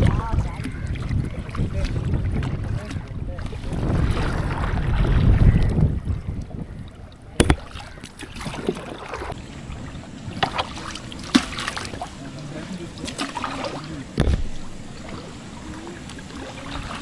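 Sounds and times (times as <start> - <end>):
wind on microphone: 0.0 - 7.8
kayak paddling on water: 0.0 - 17.0
small splashes: 7.0 - 17.0
sharp knock: 7.4 - 7.7, 14.2 - 14.9.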